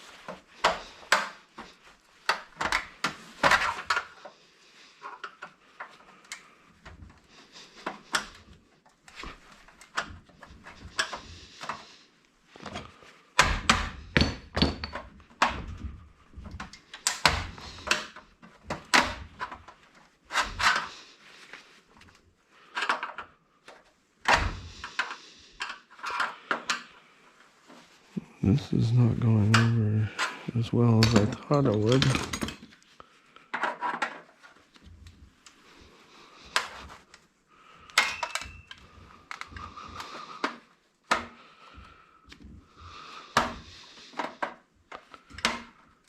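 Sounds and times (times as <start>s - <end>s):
hand tools knocking and scraping: 12.6s - 19.6s, 29.4s - 32.7s, 37.9s - 41.4s.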